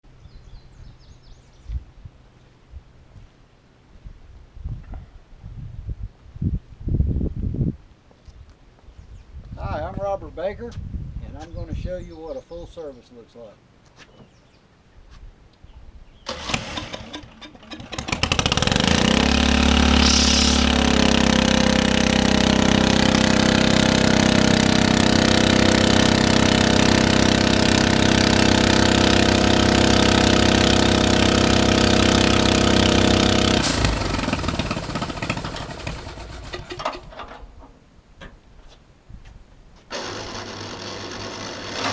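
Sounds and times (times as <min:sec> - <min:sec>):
small gasoline engine running: 0:16.3 - 0:37.1, 0:39.9 - 0:41.9.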